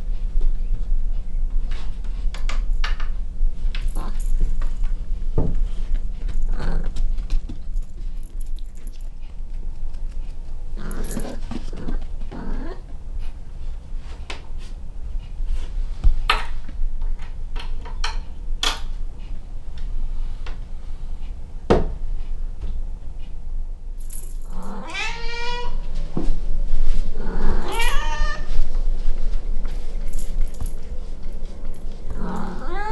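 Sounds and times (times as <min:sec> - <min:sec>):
low steady hum: 0:00.0 - 0:32.9
cat vocalizing: 0:27.2 - 0:28.5, 0:32.1 - 0:32.9.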